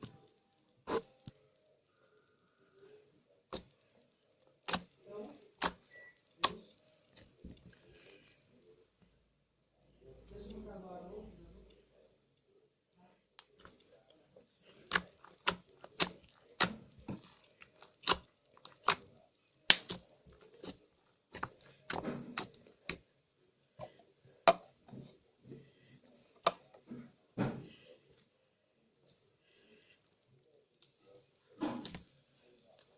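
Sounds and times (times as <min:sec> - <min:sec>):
slime popping and clicking: 0:17.8 - 0:19.0, 0:19.7 - 0:20.0.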